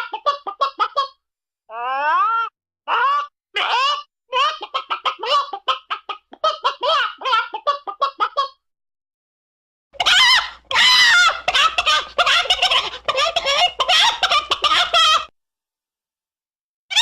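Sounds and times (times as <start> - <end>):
chicken cackling: 0.0 - 1.2, 1.8 - 8.6, 10.0 - 15.3
chicken clucking: 0.0 - 1.2, 4.4 - 8.6, 10.0 - 15.3.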